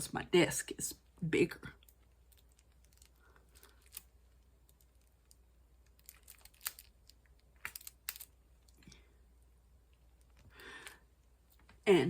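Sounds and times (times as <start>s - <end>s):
small plastic pieces clicking: 1.9s - 8.8s.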